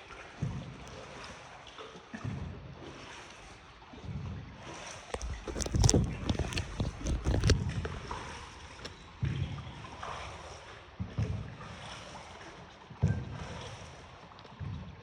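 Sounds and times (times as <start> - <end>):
water sloshing: 4.8 - 9.2.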